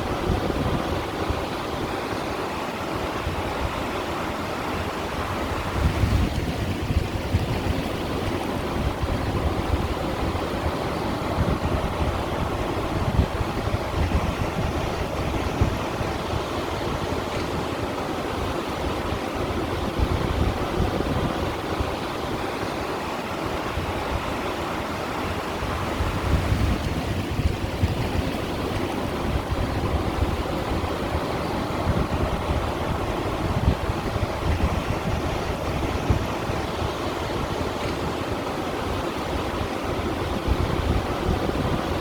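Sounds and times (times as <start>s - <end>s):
waves washing over stones: 0.0s - 42.0s.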